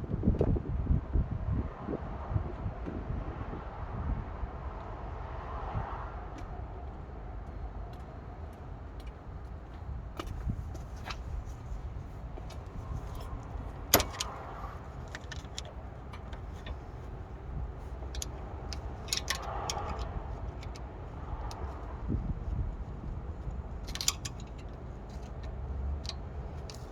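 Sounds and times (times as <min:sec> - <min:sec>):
metal tools clinking: 0:12.4 - 0:17.0, 0:18.0 - 0:20.8, 0:23.8 - 0:25.5.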